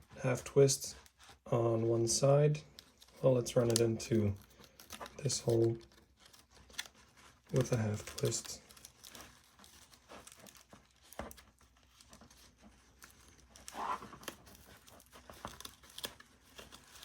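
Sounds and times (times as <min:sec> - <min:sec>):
plastic scrape: 0:00.0 - 0:17.0.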